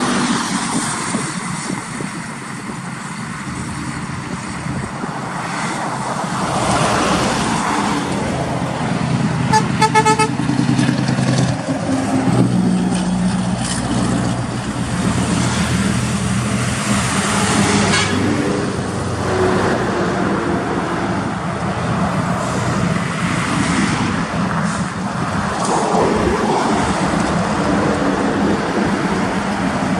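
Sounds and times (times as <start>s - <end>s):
diesel truck engine rumbling: 0.0s - 29.9s
truck horn blast: 9.4s - 10.6s, 17.2s - 18.6s.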